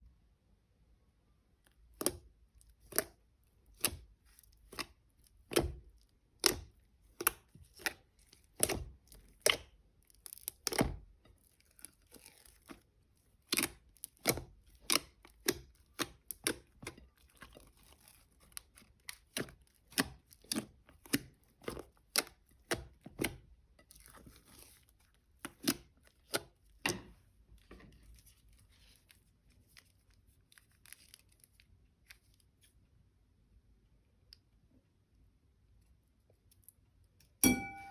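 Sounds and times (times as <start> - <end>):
plastic crinkling: 27.9 - 32.4.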